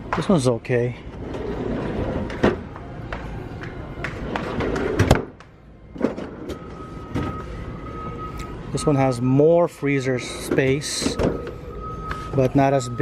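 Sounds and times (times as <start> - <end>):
store background noise: 0.0 - 13.0
steady high beep-like tone: 6.5 - 13.0.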